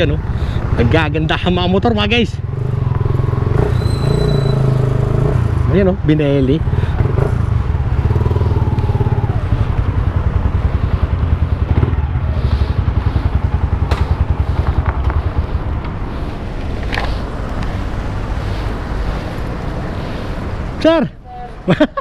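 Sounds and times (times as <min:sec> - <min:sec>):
motorcycle engine idling: 0:06.2 - 0:15.8.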